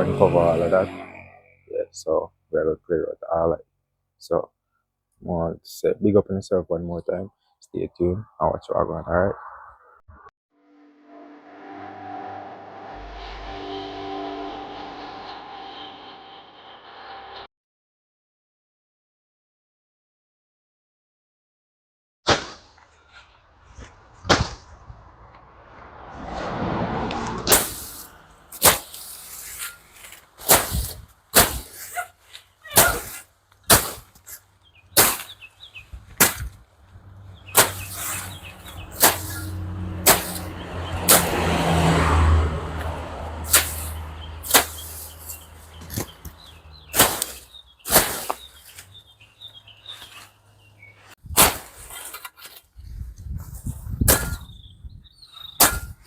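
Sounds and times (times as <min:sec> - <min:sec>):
passing vehicle hum: 0:00.0 - 0:01.7, 0:10.8 - 0:17.5, 0:24.0 - 0:30.5, 0:36.6 - 0:47.8
blade chopping weeds: 0:27.2 - 0:36.6, 0:37.5 - 0:41.9, 0:42.8 - 0:49.0, 0:51.3 - 0:52.6, 0:55.6 - 0:56.0.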